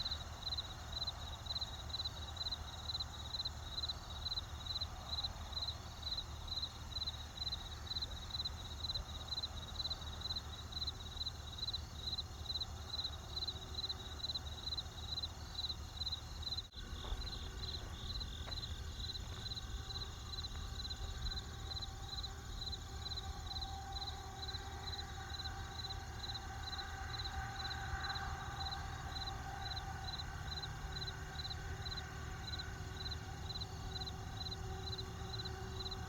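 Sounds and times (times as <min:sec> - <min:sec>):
crickets chirping: 0:00.0 - 0:36.0
low rumbling background: 0:16.7 - 0:25.0.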